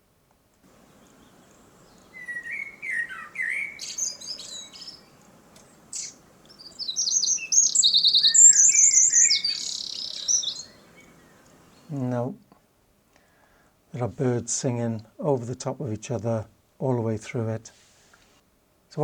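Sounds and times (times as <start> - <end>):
faint background noise: 0.0 - 19.0
bird warbling: 0.7 - 11.9
high rapid bird trills: 0.7 - 12.0
birds singing: 0.7 - 12.3.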